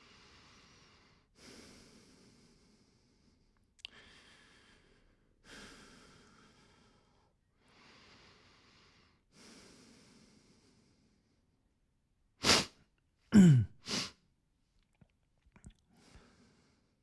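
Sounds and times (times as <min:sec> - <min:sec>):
soft human breathing: 0:00.0 - 0:11.6, 0:15.7 - 0:17.0.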